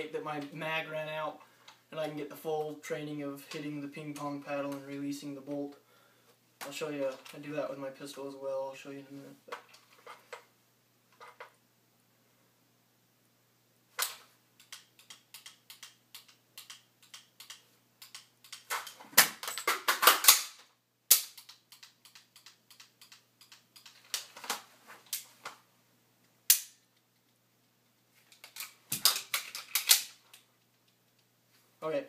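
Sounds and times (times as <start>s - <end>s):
gun mechanism clicks and clacks: 14.0s - 25.2s, 28.3s - 31.3s.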